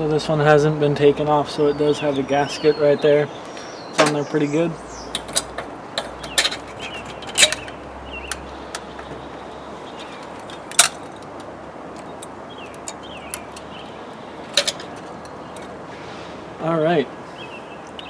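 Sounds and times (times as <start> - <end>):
metallic clicks and knocks of tools: 5.1 - 9.2, 10.0 - 13.7, 14.5 - 15.7.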